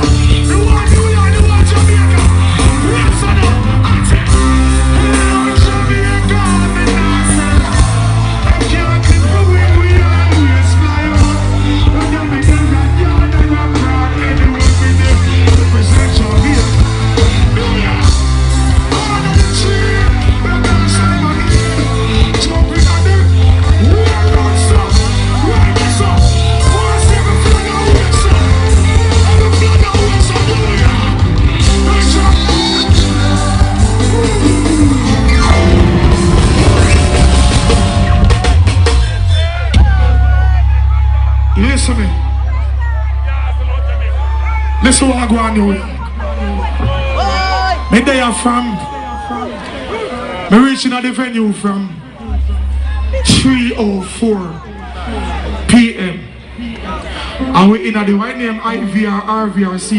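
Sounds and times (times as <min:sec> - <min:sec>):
person singing and shouting: 0:00.0 - 0:18.1, 0:18.7 - 0:35.8, 0:36.4 - 0:43.2
loud live music with heavy bass: 0:00.0 - 0:59.9.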